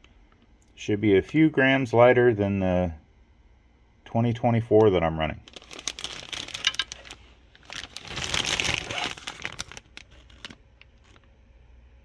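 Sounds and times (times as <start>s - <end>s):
plastic packaging crinkling: 5.4s - 11.3s.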